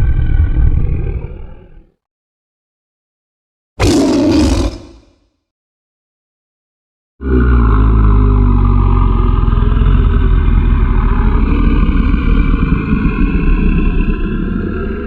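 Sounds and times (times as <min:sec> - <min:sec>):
deep rattling monster growl: 0:00.0 - 0:01.9, 0:03.8 - 0:05.1, 0:07.2 - 0:15.0.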